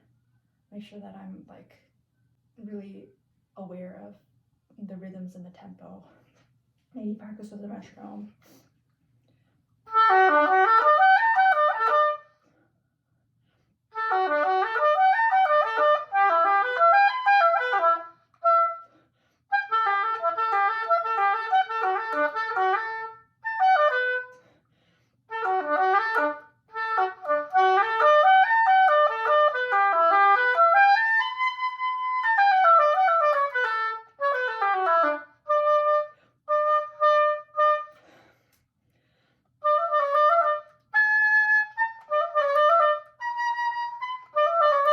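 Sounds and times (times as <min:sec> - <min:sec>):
solo oboe playing fast runs: 0:09.9 - 0:12.4, 0:13.9 - 0:24.5, 0:25.3 - 0:38.2, 0:39.6 - 0:44.9.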